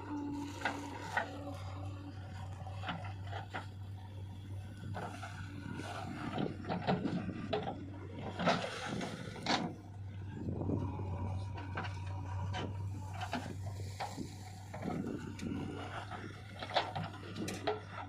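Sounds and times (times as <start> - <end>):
diesel engine running: 0.0 - 18.0
clanks knocks and scrapes: 4.9 - 9.9, 11.3 - 18.0.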